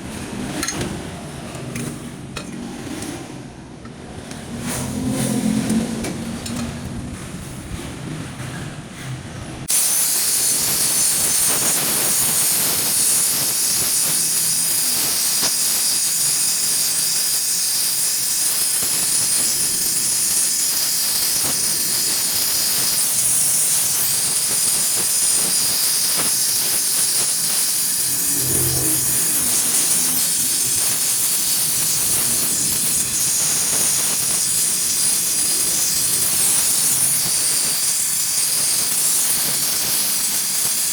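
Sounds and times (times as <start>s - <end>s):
welding torch flame hissing: 9.7s - 40.9s
low rumble: 28.0s - 30.8s.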